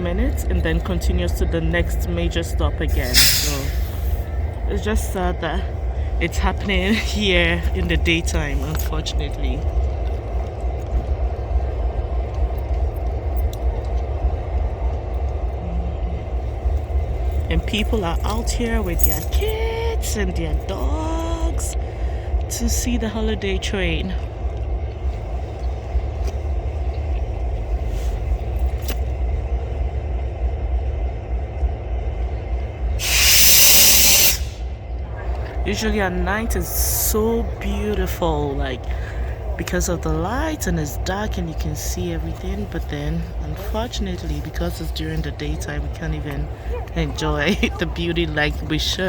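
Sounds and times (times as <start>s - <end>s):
low rumble: 0.0s - 49.0s
loud hiss: 3.0s - 4.2s, 33.0s - 34.7s.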